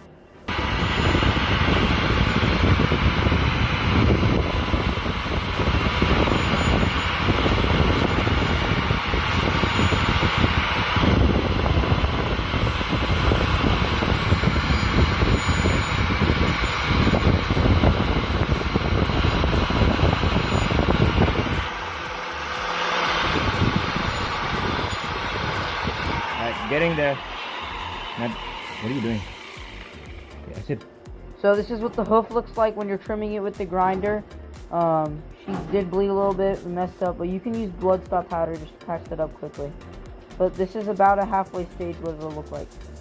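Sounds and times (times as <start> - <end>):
angle grinder grinding hoof: 0.5 - 30.9.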